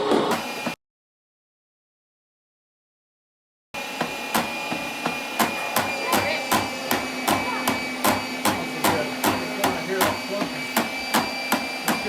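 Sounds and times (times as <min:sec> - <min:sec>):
meat grinder motor hum: 0:00.3 - 0:00.8, 0:03.8 - 0:12.0
sharp knocking of grinder auger: 0:04.0 - 0:12.0.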